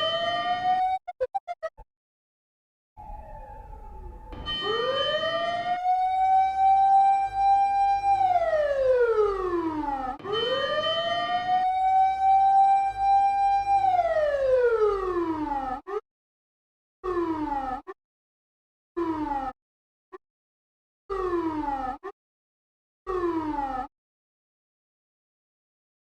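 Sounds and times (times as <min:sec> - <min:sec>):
siren rising and falling: 0:00.0 - 0:01.8, 0:03.0 - 0:16.0, 0:17.0 - 0:18.0, 0:19.0 - 0:19.6, 0:21.1 - 0:22.2, 0:23.1 - 0:23.9.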